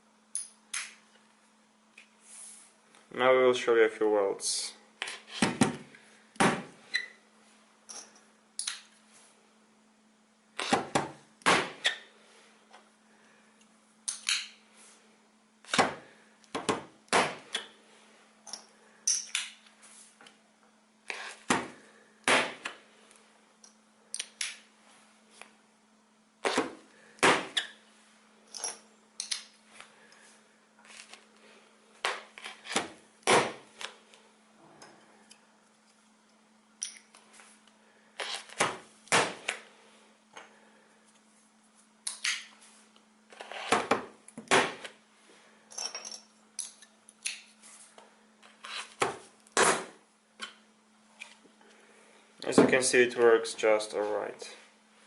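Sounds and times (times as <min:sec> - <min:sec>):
faint steady hum: 0:00.0 - 0:55.0.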